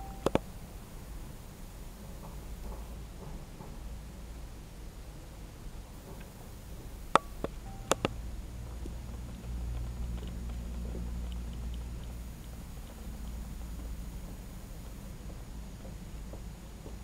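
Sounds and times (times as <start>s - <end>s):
sharp clicks: 0.0s - 0.4s, 7.2s - 14.9s.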